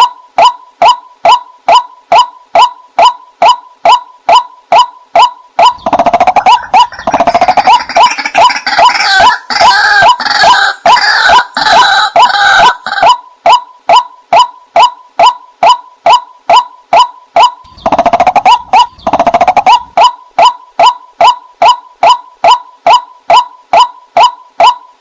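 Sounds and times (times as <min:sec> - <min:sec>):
waterhen calling kwaak: 0:00.0 - 0:25.0
rapid rattling and croaking calls: 0:05.6 - 0:13.1, 0:17.6 - 0:22.2.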